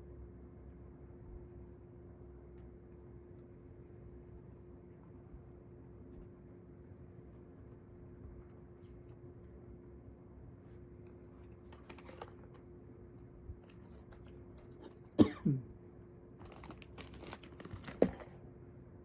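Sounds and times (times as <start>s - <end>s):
packaging crinkling and clicks: 11.6s - 12.6s, 13.6s - 15.1s, 16.4s - 18.4s.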